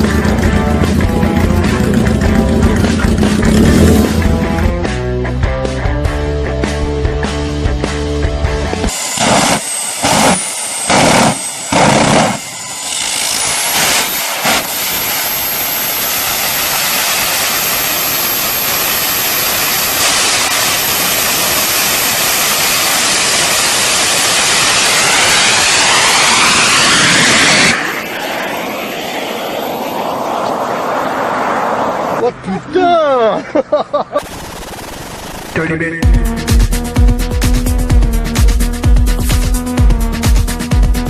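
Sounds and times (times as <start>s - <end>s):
loud engine bursts: 0.0s - 4.7s, 8.9s - 30.0s
small jet turbine engine running: 0.0s - 4.8s, 8.5s - 32.2s.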